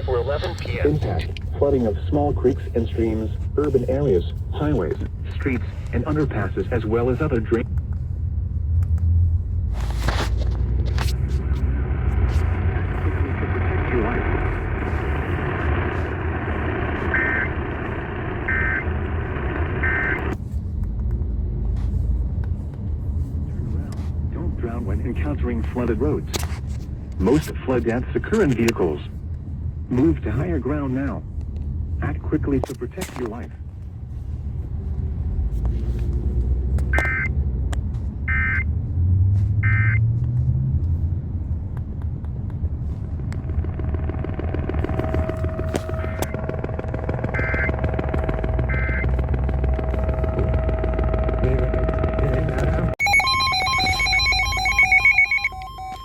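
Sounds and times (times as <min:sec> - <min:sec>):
steady hiss and rumble: 0:00.0 - 0:35.5
two-tone digital data buzz: 0:43.7 - 0:56.0.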